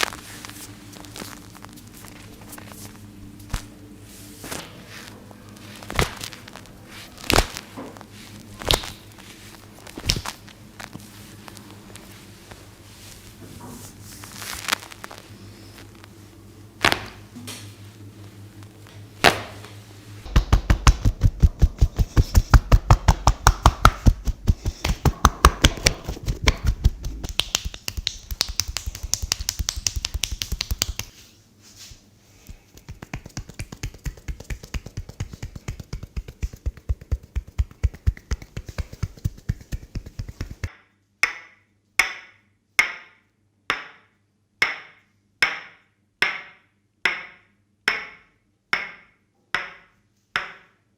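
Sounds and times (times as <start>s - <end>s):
hands tapping and slapping body: 20.3s - 31.2s, 32.5s - 40.8s
sharp finger snaps: 27.2s - 31.1s.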